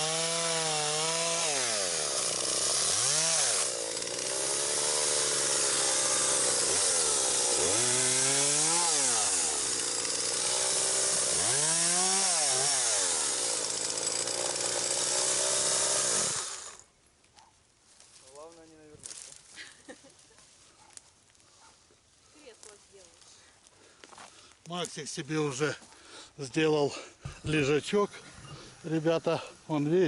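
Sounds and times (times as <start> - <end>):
chainsaw cutting branches: 0.0 - 16.9.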